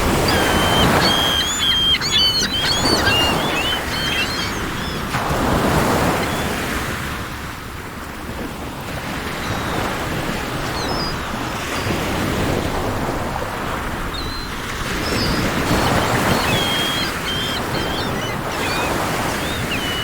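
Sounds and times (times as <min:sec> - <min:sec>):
sea waves washing in: 0:00.0 - 0:20.0
bird chirps: 0:00.1 - 0:05.0, 0:14.2 - 0:20.0.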